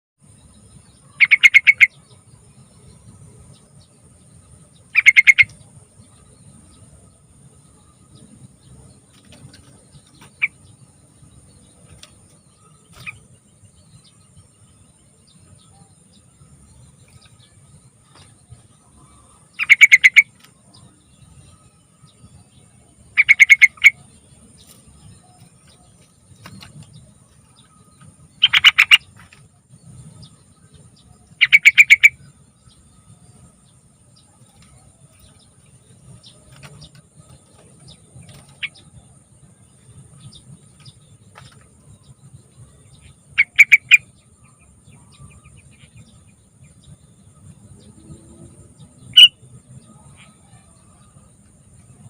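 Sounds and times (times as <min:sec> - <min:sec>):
bulbul singing quick repeated notes: 0:19.6 - 0:20.4, 0:28.4 - 0:29.3, 0:31.4 - 0:32.3.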